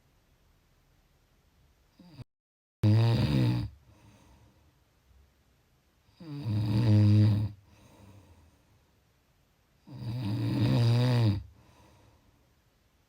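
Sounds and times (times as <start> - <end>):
person snoring: 2.8 - 4.2, 6.2 - 7.6, 9.8 - 11.7
quiet breathing: 3.7 - 5.3, 7.0 - 9.2, 11.4 - 12.7.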